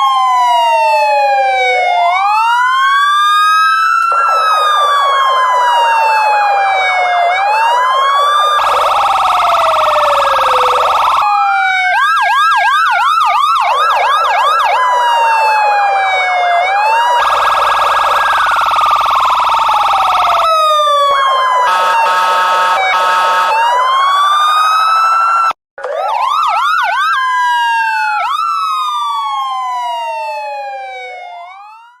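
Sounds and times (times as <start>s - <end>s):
police siren wail and yelp: 0.0s - 32.0s
horn-like siren blasts: 4.0s - 12.0s, 13.7s - 27.1s, 29.4s - 32.0s.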